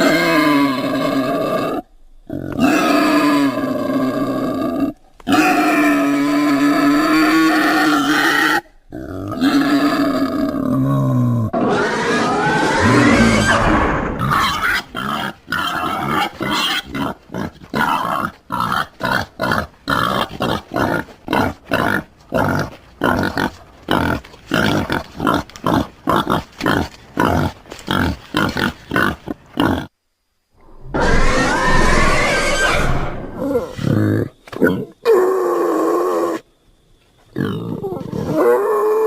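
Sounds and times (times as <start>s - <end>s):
growling monster call: 0.0s - 18.7s.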